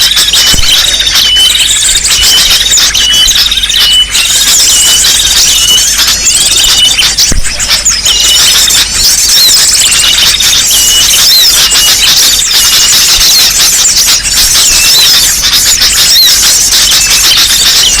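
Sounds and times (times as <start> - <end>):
small birds chirping and twittering: 0.0 - 18.0.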